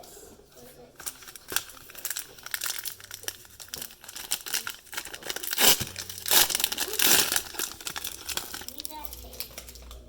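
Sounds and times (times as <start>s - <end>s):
cellophane wrappers crinkling: 1.0s - 10.0s
sticky tape pulled and torn: 5.2s - 8.8s.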